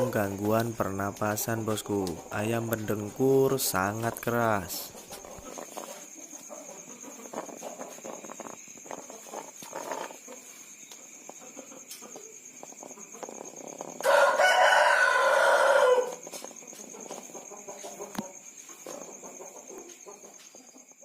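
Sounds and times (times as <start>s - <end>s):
chicken rasping breaths: 4.9s - 11.8s
rooster crowing: 13.9s - 16.2s.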